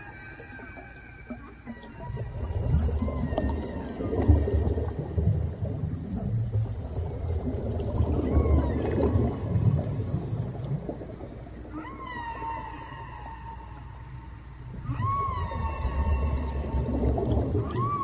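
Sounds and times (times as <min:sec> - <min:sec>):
whale calls: 0:00.0 - 0:06.3, 0:07.0 - 0:18.0
underwater water noise: 0:00.0 - 0:18.0.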